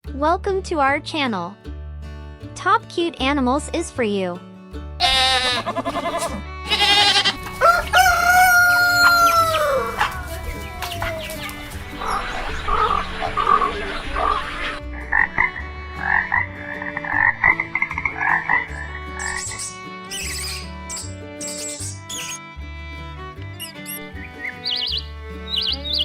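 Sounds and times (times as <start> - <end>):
rooster crowing: 7.2 - 11.2
frog croaking: 12.0 - 19.4.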